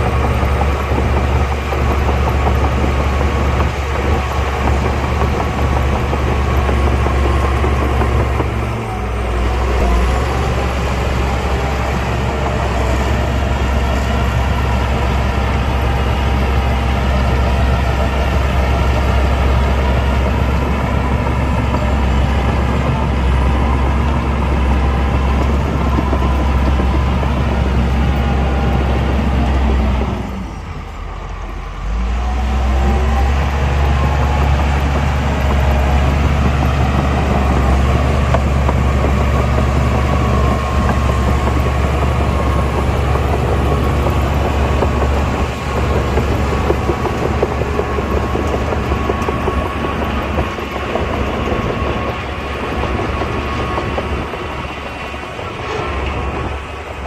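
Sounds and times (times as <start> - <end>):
heavy diesel engine under load: 0.0 - 57.0.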